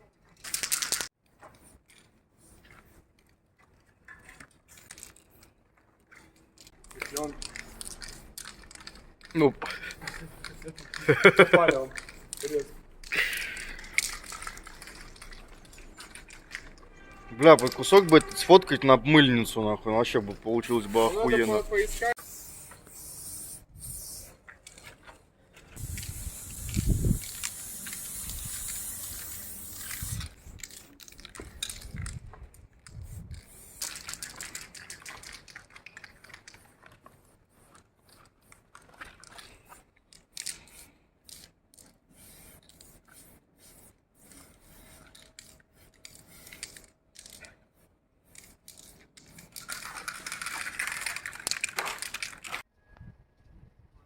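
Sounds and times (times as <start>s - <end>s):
spray-paint can hissing: 20.8s - 24.4s, 25.8s - 31.8s, 33.0s - 34.7s, 42.1s - 47.4s.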